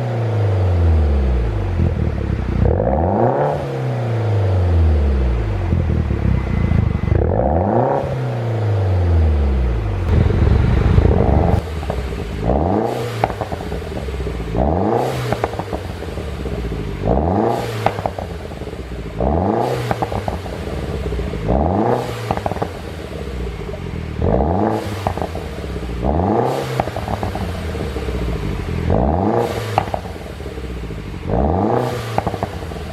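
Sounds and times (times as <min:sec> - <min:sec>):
car engine revving: 0:00.0 - 0:32.9
exhaust pops and crackles: 0:10.1 - 0:14.6, 0:15.3 - 0:16.9, 0:17.8 - 0:19.2, 0:19.8 - 0:23.9, 0:24.9 - 0:25.5, 0:26.8 - 0:29.0, 0:29.6 - 0:31.2, 0:32.1 - 0:32.9.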